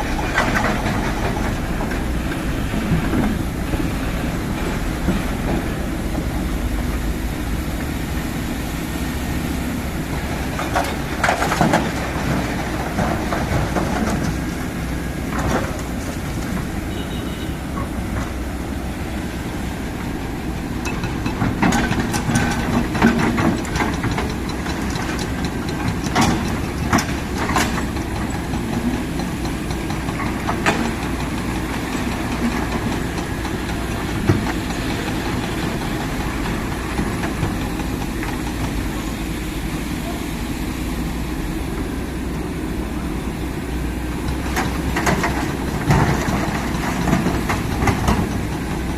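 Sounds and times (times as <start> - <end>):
excavator diesel engine running: 0.0 - 48.9.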